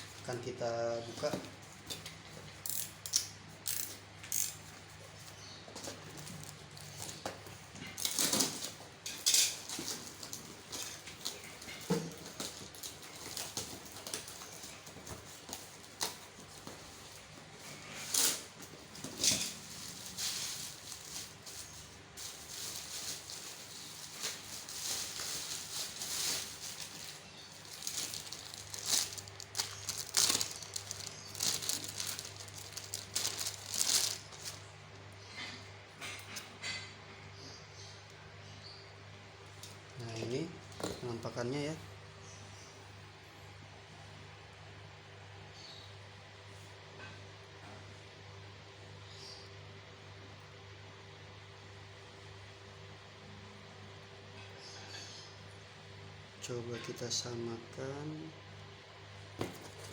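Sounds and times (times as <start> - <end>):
handling noises: 0.0 - 36.9, 59.2 - 59.9
packaging rustling and crinkling: 5.2 - 34.8.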